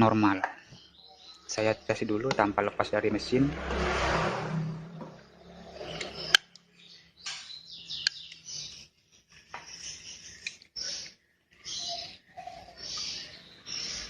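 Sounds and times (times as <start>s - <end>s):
low hum: 1.8s - 6.4s.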